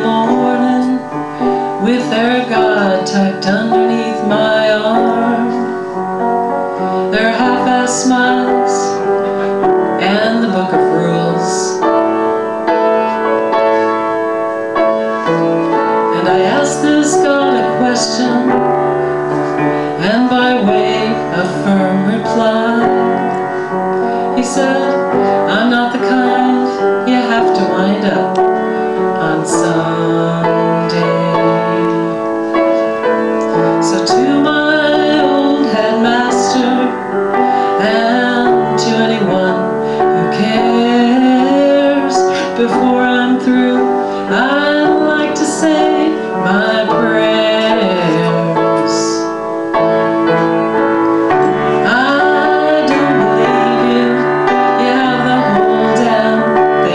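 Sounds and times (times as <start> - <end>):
piano accompaniment: 0.0 - 56.9
woman singing rock ballad: 16.1 - 18.6, 20.0 - 22.8, 24.4 - 28.3, 33.8 - 37.0, 37.6 - 49.3, 51.8 - 56.9.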